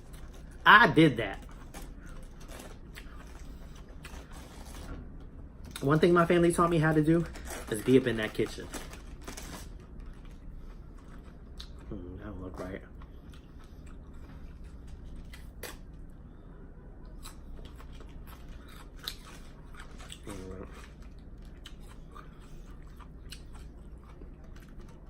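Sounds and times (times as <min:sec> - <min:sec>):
close chewing crisp lettuce: 0:00.0 - 0:04.9, 0:17.0 - 0:25.0.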